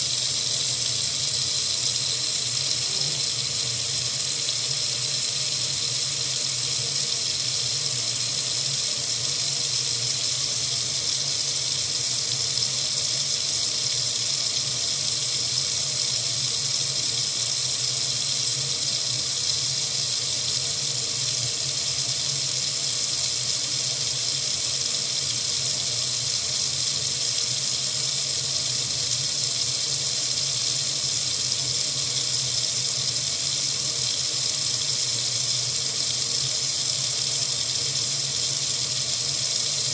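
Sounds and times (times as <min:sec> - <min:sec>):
water running from faucet: 0:00.0 - 0:39.9.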